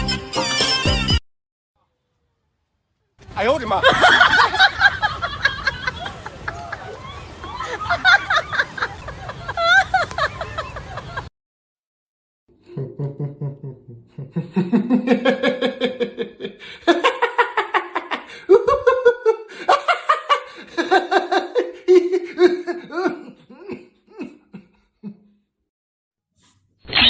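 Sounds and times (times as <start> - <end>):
people laughing: 3.6 - 11.3, 12.7 - 25.3.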